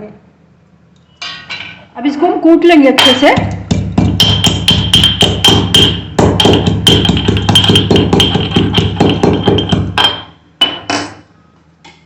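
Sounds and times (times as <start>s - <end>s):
pestle pounding in mortar: 3.0s - 11.2s.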